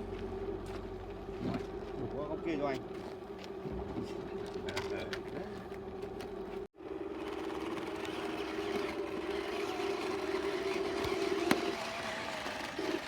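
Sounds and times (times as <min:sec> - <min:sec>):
hydraulic pump whining: 0:06.8 - 0:13.0.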